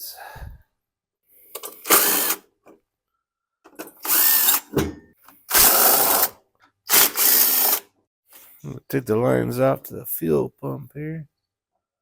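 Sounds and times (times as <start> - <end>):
cordless drill running: 1.8 - 2.4, 4.0 - 4.7, 5.5 - 7.9.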